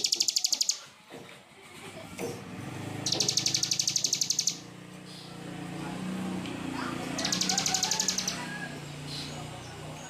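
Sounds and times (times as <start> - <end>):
songbird trilling: 0.0 - 0.9, 3.0 - 4.7, 7.2 - 9.3.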